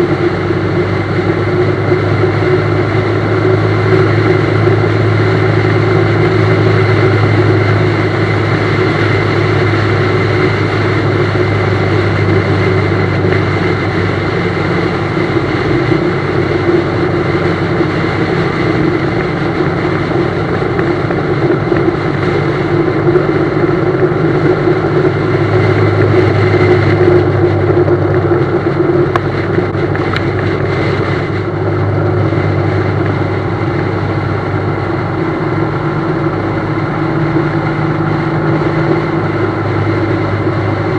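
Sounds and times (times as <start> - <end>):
motorcycle engine running: 0.0 - 40.9
road and wind noise: 0.0 - 40.9.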